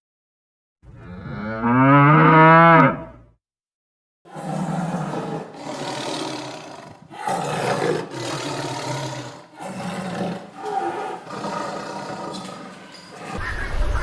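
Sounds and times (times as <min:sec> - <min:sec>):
big cat growling roars: 0:04.3 - 0:13.4.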